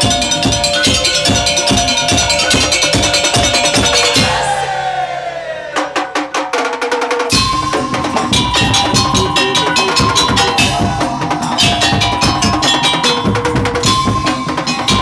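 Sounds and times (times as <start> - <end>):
fast dense drumming: 0.0 - 4.7, 5.8 - 15.0
held melody notes: 7.3 - 15.0.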